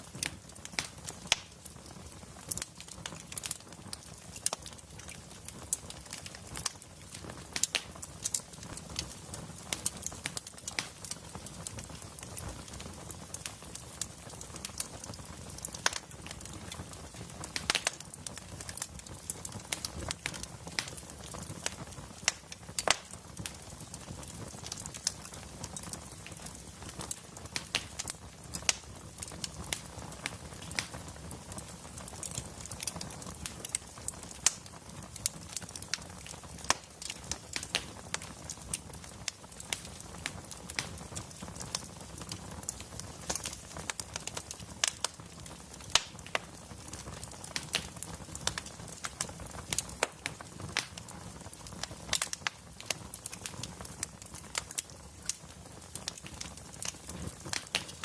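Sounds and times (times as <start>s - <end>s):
wood fire crackling: 0.0s - 58.0s
burning logs rumbling: 2.0s - 58.0s.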